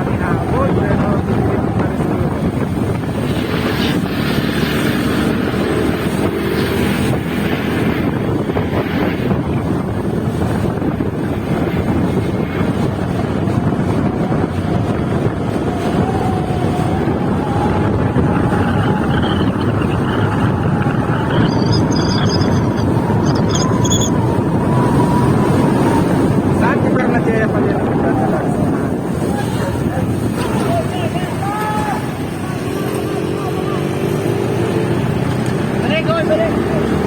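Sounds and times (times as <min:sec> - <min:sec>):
wind noise on microphone: 0:00.0 - 0:37.0
faint rising tone: 0:18.4 - 0:24.2.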